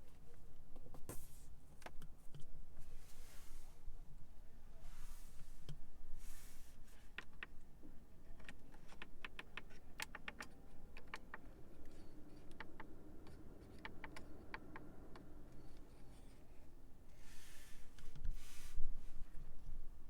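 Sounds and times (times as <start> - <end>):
faint steady hum: 0.0 - 20.0
car buttons and switches clicking: 8.4 - 15.9.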